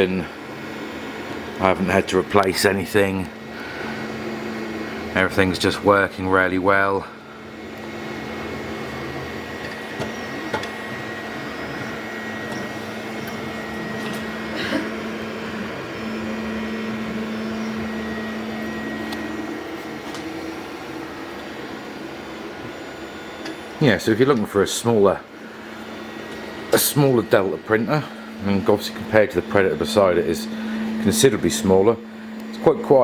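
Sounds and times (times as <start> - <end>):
printer fans and motors whirring: 0.0 - 33.0
humming tone: 7.2 - 23.7, 25.3 - 33.0.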